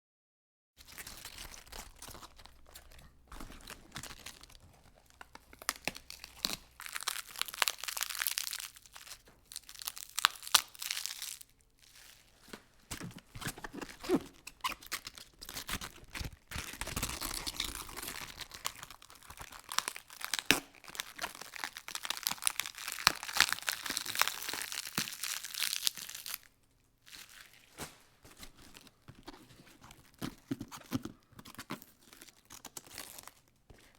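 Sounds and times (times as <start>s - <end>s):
lettuce leaves tearing: 13.1s - 26.4s.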